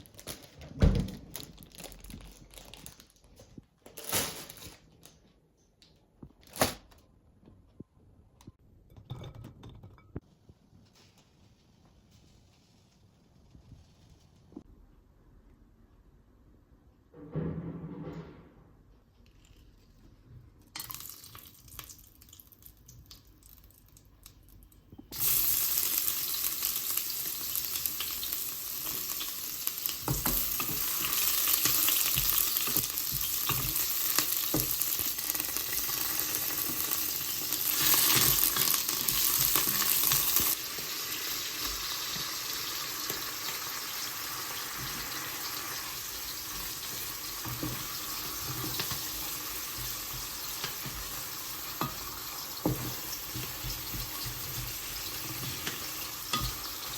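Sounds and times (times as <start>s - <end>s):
food sizzling in a pan: 25.1s - 56.9s.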